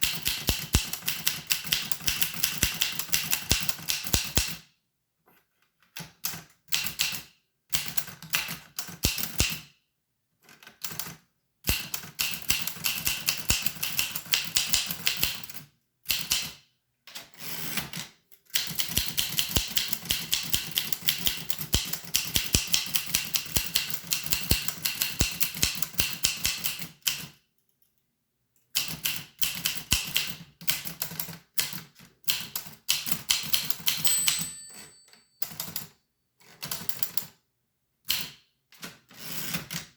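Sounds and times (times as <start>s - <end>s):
typewriter keys clacking: 0.0s - 4.5s, 18.6s - 26.8s, 32.3s - 35.7s.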